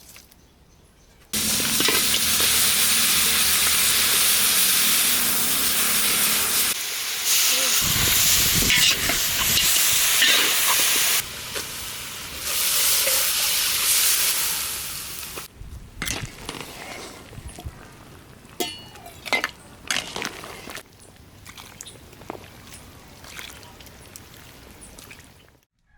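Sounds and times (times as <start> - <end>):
food sizzling in a hot pan: 1.4 - 15.5.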